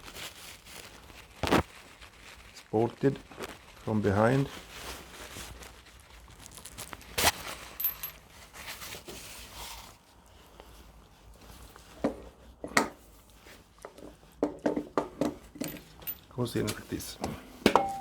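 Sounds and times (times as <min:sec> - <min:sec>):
metallic clinks and knocks: 0:07.8 - 0:08.2, 0:14.5 - 0:16.3, 0:17.2 - 0:18.0.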